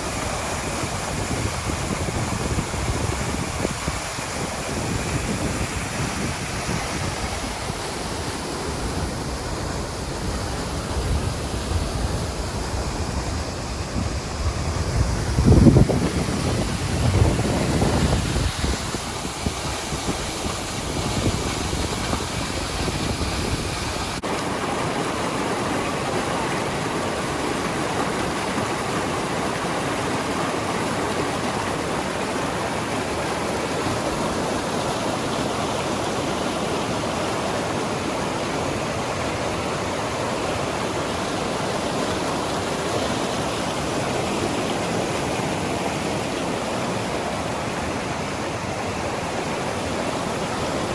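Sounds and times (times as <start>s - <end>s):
wind buffeting microphone: 0.0s - 24.2s
waterfall roaring: 0.0s - 50.9s.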